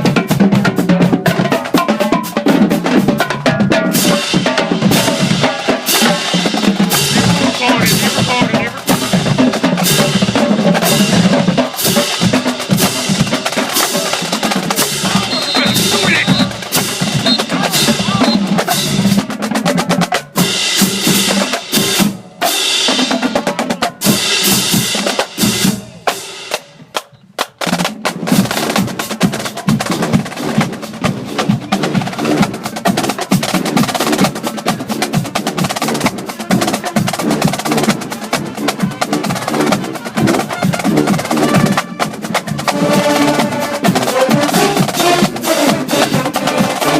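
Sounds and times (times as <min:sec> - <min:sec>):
bass drums: 0:02.6 - 0:20.0.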